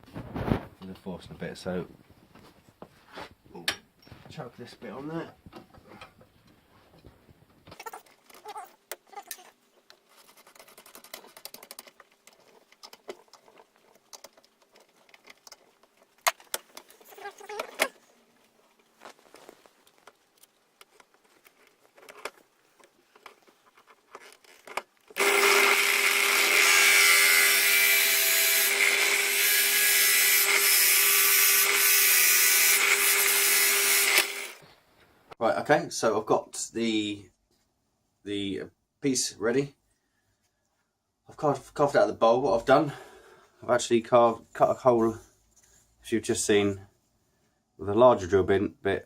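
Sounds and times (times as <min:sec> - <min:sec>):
bench drill boring into wood: 0:25.2 - 0:34.6.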